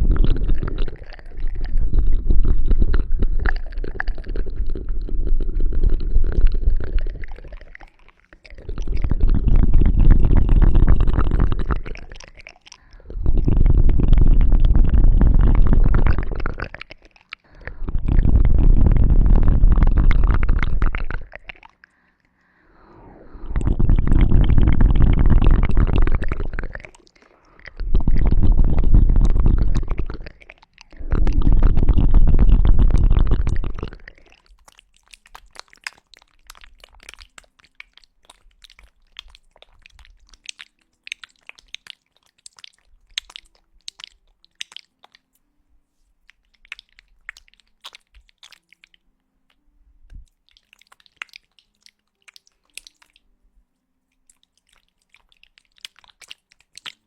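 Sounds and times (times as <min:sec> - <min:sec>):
scratching and rubbing on microphone: 0:00.0 - 0:07.8, 0:08.6 - 0:12.4, 0:13.2 - 0:16.9, 0:17.8 - 0:21.4, 0:23.4 - 0:27.1, 0:27.8 - 0:34.3
deep rumble: 0:27.7 - 0:30.2.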